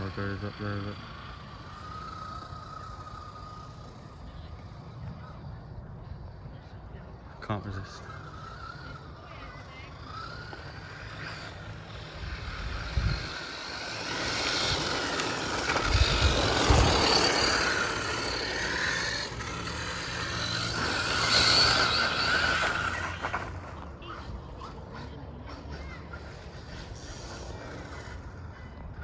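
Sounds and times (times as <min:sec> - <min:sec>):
electric motor whining: 0:00.0 - 0:06.5, 0:07.5 - 0:25.0
tyres rushing on ground: 0:07.2 - 0:29.0.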